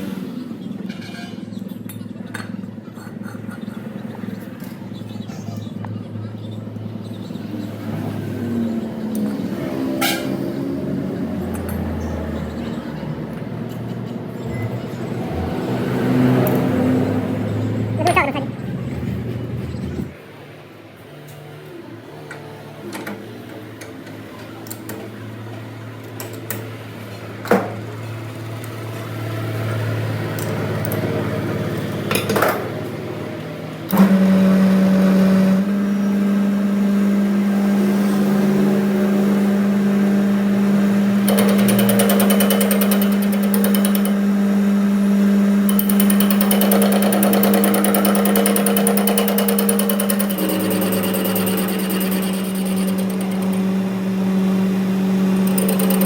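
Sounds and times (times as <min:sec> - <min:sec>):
power tool running hum: 0:33.9 - 0:56.0
rough high-pitched noise: 0:45.8 - 0:56.0.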